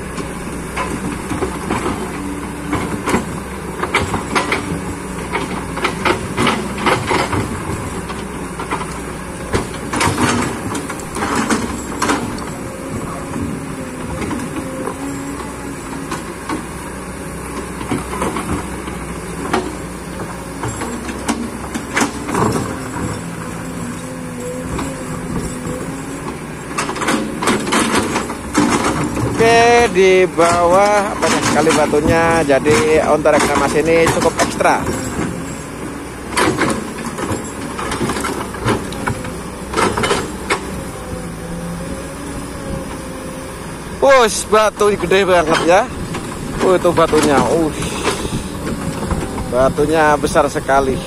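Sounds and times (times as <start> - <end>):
excavator engine running: 0.0 - 51.0
bucket clanking against rocks: 26.7 - 35.3.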